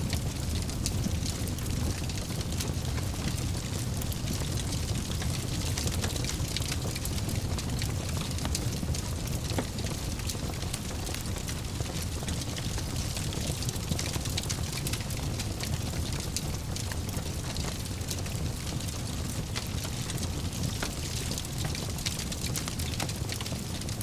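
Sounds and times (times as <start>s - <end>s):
fire crackling and popping: 0.0s - 24.0s.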